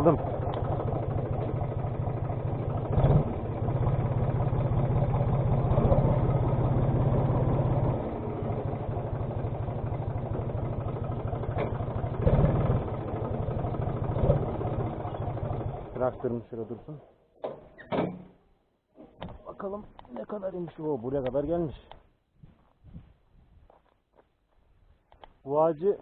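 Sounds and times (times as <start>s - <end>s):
tractor diesel engine running: 0.0s - 16.9s.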